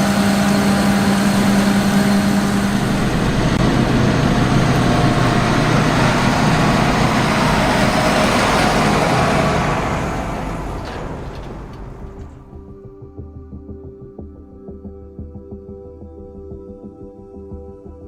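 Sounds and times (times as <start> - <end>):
combine harvester engine hum: 0.0 - 12.8.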